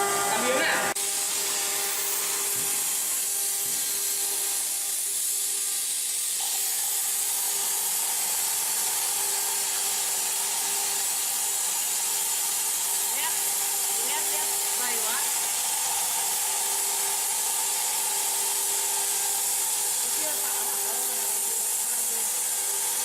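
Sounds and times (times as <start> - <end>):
plasma cutter torch hissing: 0.0 - 23.0.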